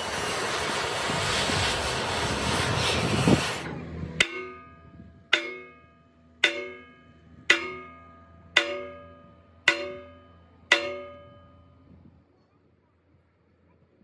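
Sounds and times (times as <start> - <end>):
loud rushing noise: 0.0 - 4.8
ringing metallic strikes: 4.2 - 12.1.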